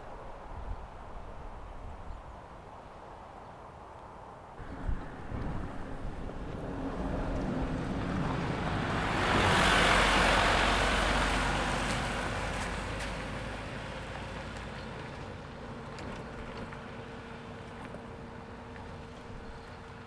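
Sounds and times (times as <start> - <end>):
vehicle driving past: 4.7 - 19.8.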